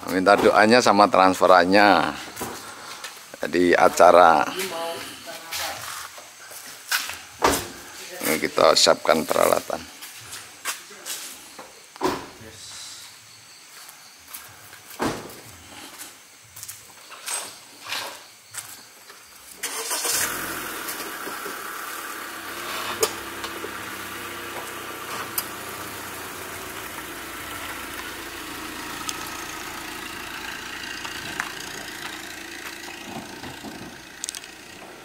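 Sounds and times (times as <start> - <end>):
engine running: 19.6 - 35.0.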